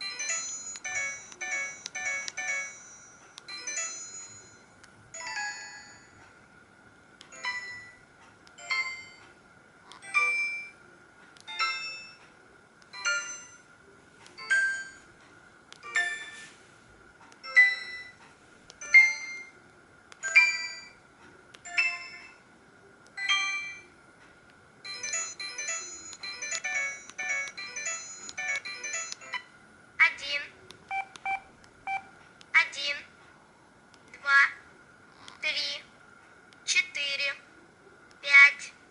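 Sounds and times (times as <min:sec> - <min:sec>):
mobile phone ringtone: 0:00.0 - 0:04.6, 0:24.8 - 0:29.3.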